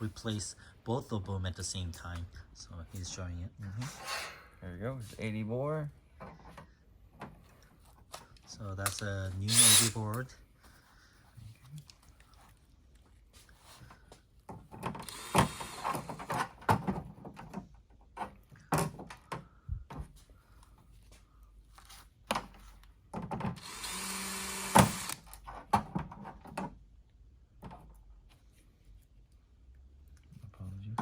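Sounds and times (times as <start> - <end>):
electric screwdriver driving screws: 9.5 - 10.0, 15.0 - 16.3, 23.6 - 25.3.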